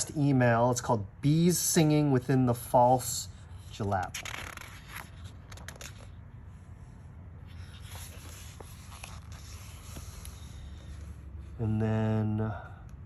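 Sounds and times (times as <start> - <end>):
low steady hum: 0.0 - 13.0
book pages turning: 3.6 - 6.4, 7.4 - 11.4.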